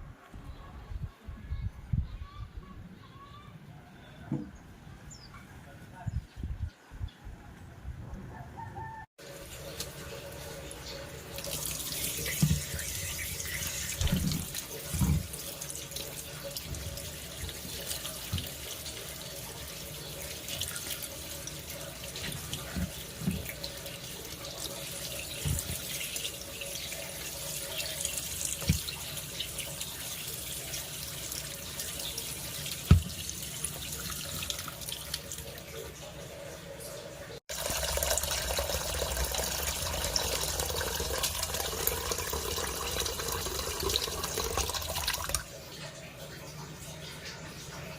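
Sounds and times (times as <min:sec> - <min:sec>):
tap water running into sink: 0:09.4 - 0:35.7, 0:37.5 - 0:45.5.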